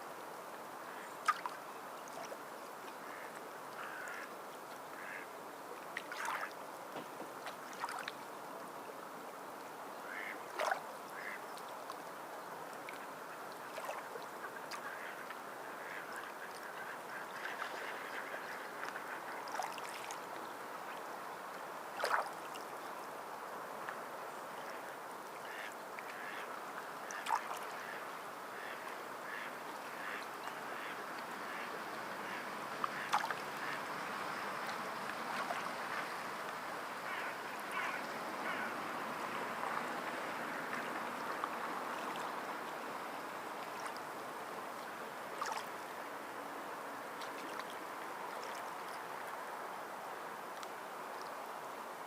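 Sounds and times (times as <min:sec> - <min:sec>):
sea water lapping: 0:07.5 - 0:08.2, 0:12.9 - 0:21.0, 0:22.0 - 0:22.6, 0:25.4 - 0:46.1
short sharp splashes: 0:22.0 - 0:22.3, 0:32.9 - 0:33.8.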